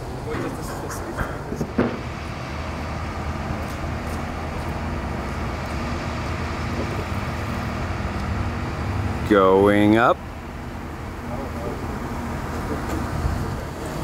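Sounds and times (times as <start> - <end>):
crane engine drone: 0.0 - 14.0.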